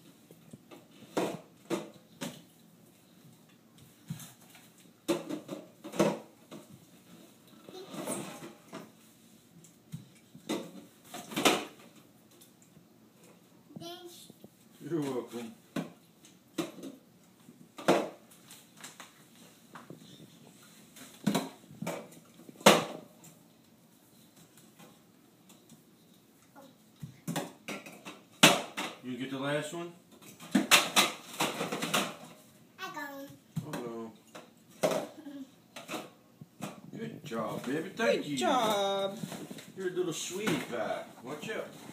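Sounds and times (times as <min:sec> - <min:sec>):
items knocking on fridge shelves: 0:17.8 - 0:18.2, 0:21.2 - 0:23.2, 0:27.2 - 0:29.0.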